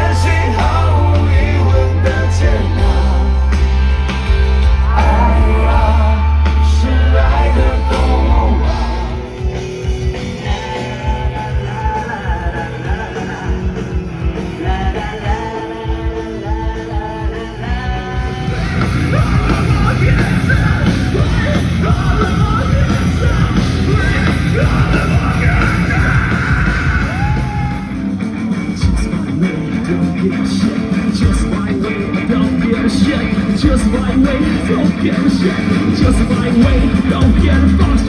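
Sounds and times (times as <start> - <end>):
rock music: 0.0 - 38.0
shouted vocals: 4.8 - 9.4, 14.6 - 28.0
person singing: 4.8 - 9.5.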